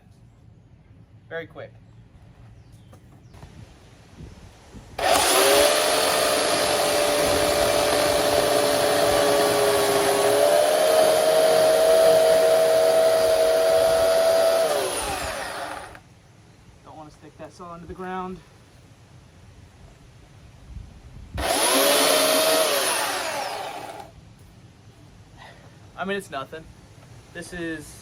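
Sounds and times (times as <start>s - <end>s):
electric chainsaw whining: 5.0s - 16.0s, 21.4s - 24.1s.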